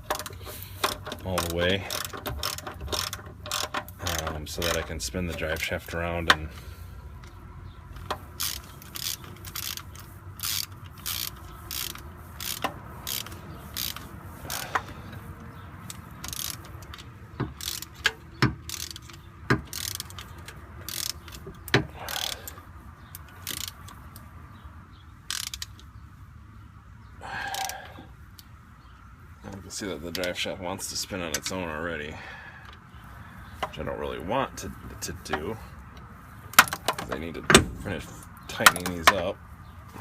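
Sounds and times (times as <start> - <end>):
socket ratchet clicking: 0.0 - 5.6, 8.0 - 24.3, 25.2 - 26.0.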